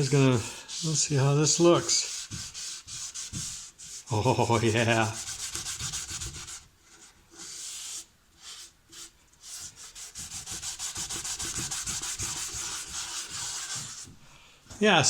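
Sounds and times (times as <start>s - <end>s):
hand rubbing stain onto wood: 0.0s - 14.2s.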